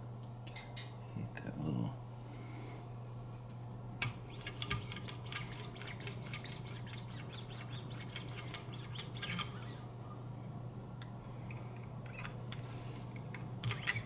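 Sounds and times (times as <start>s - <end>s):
squeaky sharpening strokes: 4.3s - 9.9s.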